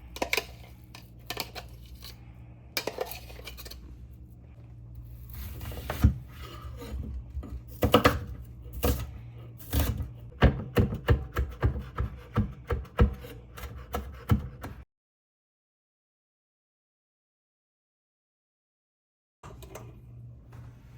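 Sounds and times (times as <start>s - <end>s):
steady low hum: 0.0s - 14.8s
knife chopping on cutting board: 9.7s - 14.8s.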